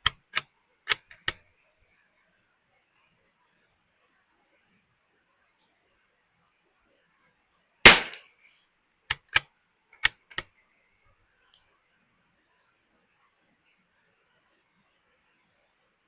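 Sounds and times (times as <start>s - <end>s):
rifle shot: 7.9s - 8.2s
rifle bolt clicks: 10.0s - 10.5s.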